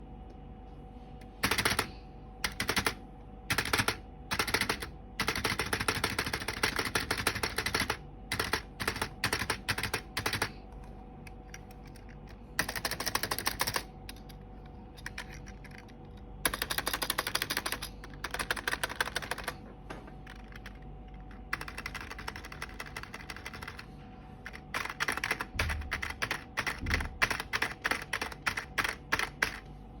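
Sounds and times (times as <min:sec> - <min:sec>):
faint steady hum: 0:00.0 - 0:30.0
keyboard keystrokes clattering: 0:01.4 - 0:29.6.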